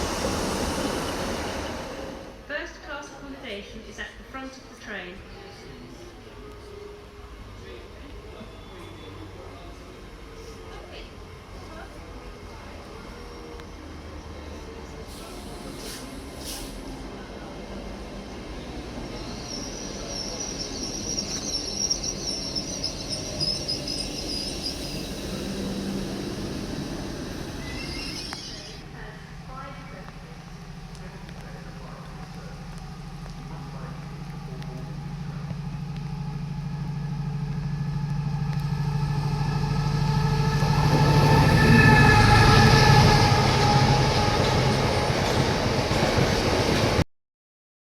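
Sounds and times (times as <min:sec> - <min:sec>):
train rumbling: 0:00.0 - 0:47.0
high metallic squeal: 0:27.5 - 0:28.8, 0:39.0 - 0:45.0.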